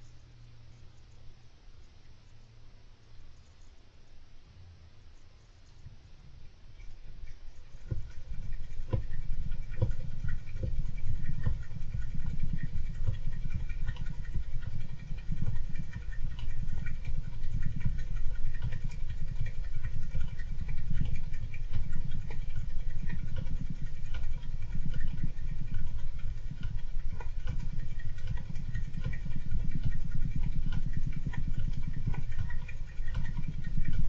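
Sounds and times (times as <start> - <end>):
hamster scratching and pattering: 6.8 - 34.0.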